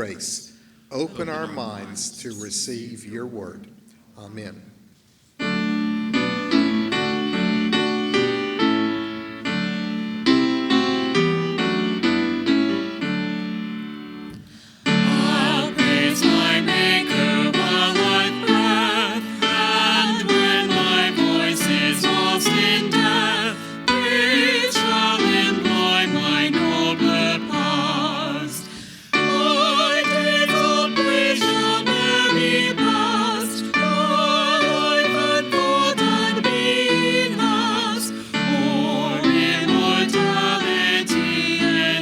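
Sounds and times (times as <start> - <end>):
piano playing chords: 5.4 - 42.0
person singing with vibrato: 14.9 - 42.0.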